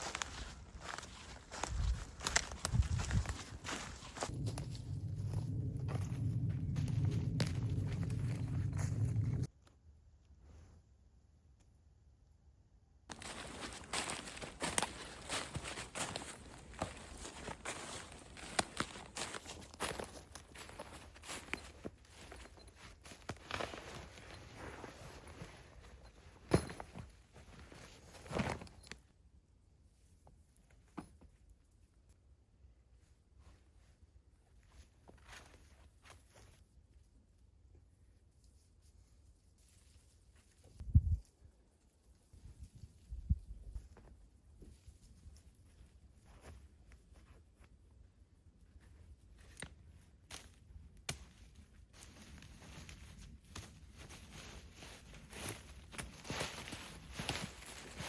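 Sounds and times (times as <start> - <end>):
footsteps and rustling on ground: 0.0 - 9.5, 13.1 - 29.0, 33.4 - 37.0, 38.3 - 47.8, 48.6 - 58.0
low steady rumble: 4.1 - 9.5.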